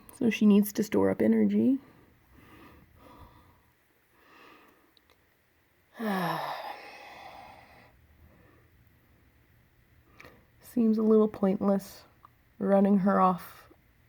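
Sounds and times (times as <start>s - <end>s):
faint breaths: 1.8s - 5.0s, 6.0s - 8.9s
person sighing heavily: 5.9s - 7.7s.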